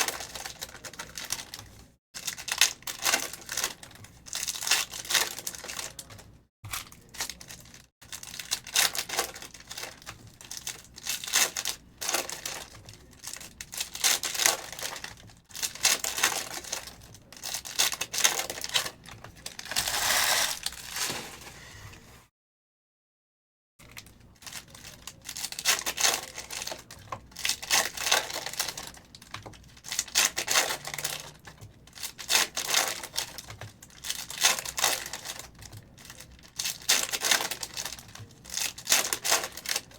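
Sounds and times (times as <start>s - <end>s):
plastic wrappers tearing and crinkling: 6.7s - 21.5s, 23.8s - 39.9s.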